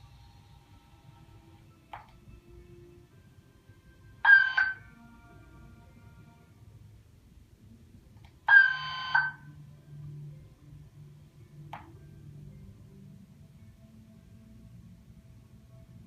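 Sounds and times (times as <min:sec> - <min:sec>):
fire alarm buzzing tone: 0:04.2 - 0:04.9, 0:08.5 - 0:09.4.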